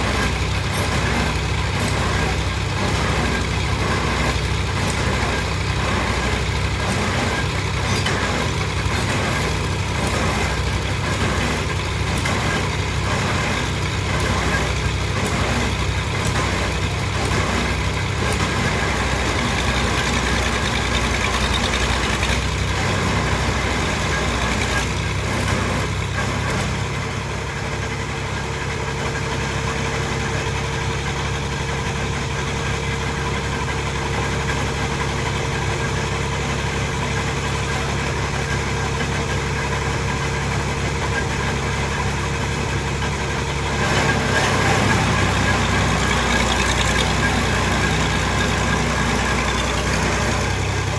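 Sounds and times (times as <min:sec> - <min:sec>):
heavy machinery engine running: 0:00.0 - 0:50.9.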